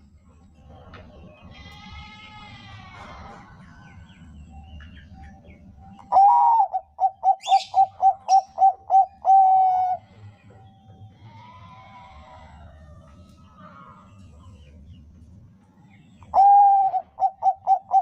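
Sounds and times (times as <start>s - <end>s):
dove cooing: 6.0s - 10.2s, 16.3s - 18.0s.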